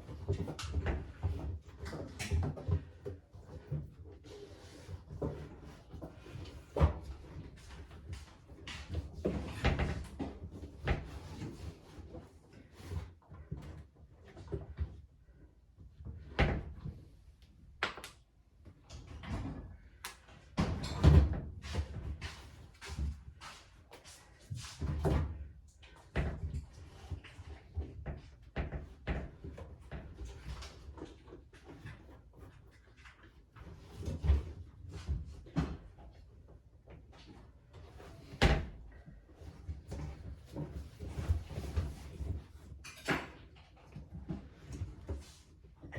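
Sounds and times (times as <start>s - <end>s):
knocks and scraping on washing machine: 0.0s - 15.0s.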